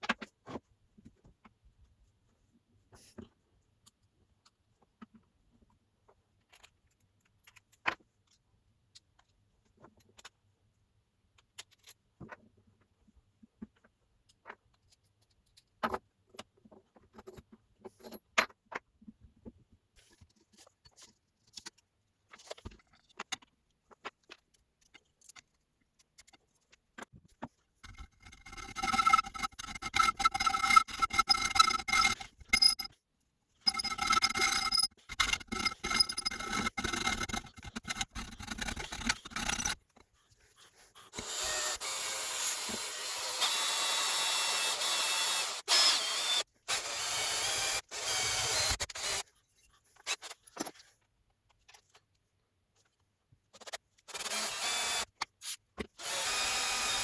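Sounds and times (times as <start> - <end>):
metal parts clinking: 27.8 - 32.9, 33.7 - 39.8
metal scraping on metal: 27.8 - 32.9, 33.7 - 39.8.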